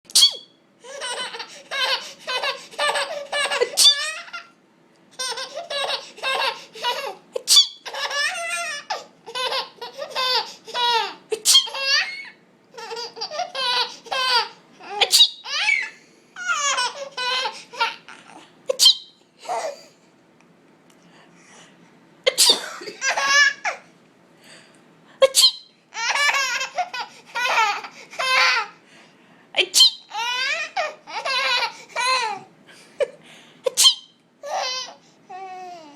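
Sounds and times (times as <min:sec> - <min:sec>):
baby laughing: 0:00.2 - 0:19.9, 0:22.4 - 0:23.9, 0:25.2 - 0:28.8, 0:30.0 - 0:35.9
pretend sneeze: 0:22.3 - 0:22.8.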